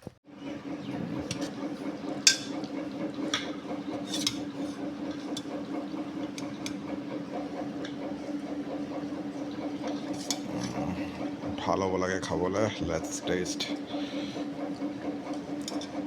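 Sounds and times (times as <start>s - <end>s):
low hum: 0.3s - 15.9s
spoon scraping cooking pot: 1.2s - 11.4s.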